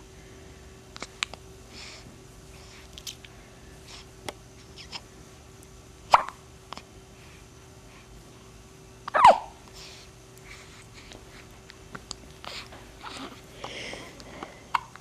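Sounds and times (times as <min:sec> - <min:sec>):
person hiccuping: 0:06.1 - 0:06.4, 0:09.1 - 0:09.5.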